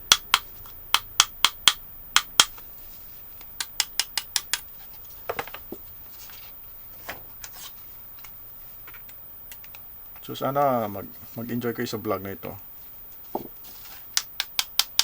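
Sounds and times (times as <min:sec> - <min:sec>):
sharp clicks: 0:00.0 - 0:02.7, 0:03.4 - 0:04.7, 0:09.0 - 0:10.3, 0:14.1 - 0:15.0.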